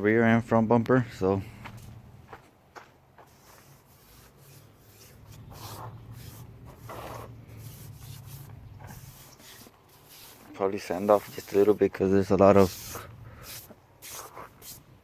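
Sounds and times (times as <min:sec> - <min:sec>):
hand sanding strokes: 0:03.2 - 0:15.0.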